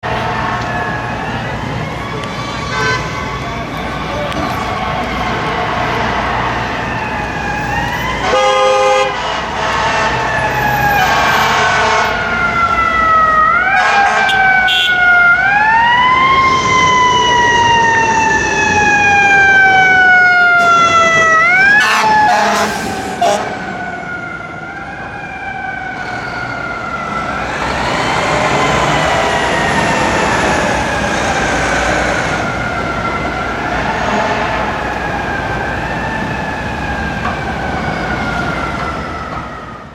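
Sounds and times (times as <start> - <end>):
fire truck siren wailing: 0.0 - 39.9
air horn blast: 2.7 - 3.1, 8.2 - 10.3, 11.0 - 12.2, 13.7 - 15.0, 21.7 - 23.6, 34.0 - 34.7.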